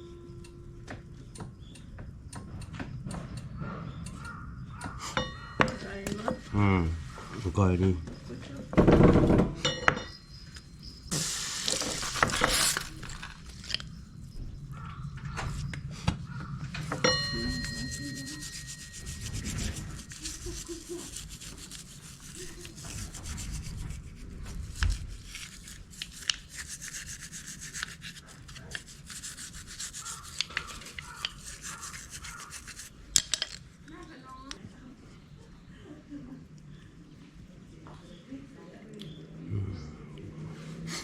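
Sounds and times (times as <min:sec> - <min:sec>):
sharp ringing metal clink: 0:05.2 - 0:06.0, 0:17.0 - 0:18.5
scrubbing metal brake parts: 0:11.1 - 0:14.0, 0:16.8 - 0:33.6.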